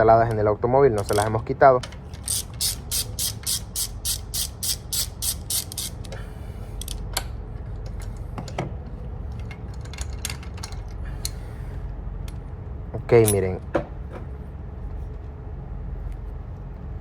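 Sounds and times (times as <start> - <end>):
steady low hum: 0.0 - 17.0
ratchet wrench clicking: 2.2 - 6.2.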